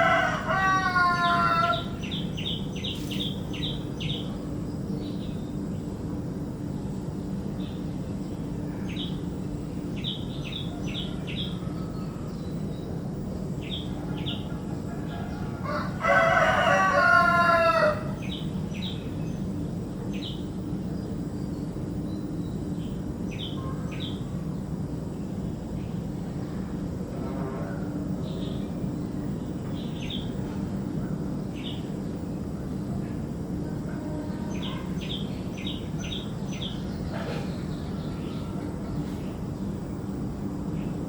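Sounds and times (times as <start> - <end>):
loud long bird call: 0.0 - 4.4
birds chirping: 0.0 - 5.9, 7.5 - 26.1, 34.0 - 41.0
steady low hum: 0.0 - 41.0.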